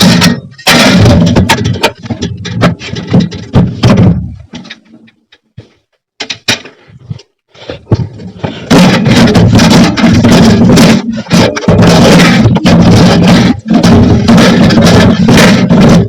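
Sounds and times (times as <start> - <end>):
parts clattering and knocking: 0.0 - 16.0.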